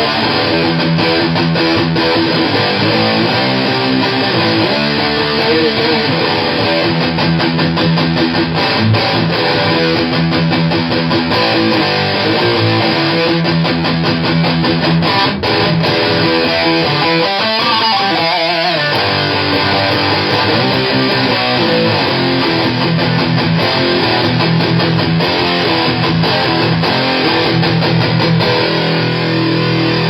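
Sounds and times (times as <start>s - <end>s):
fuzz-distorted electric guitar: 0.0s - 30.0s.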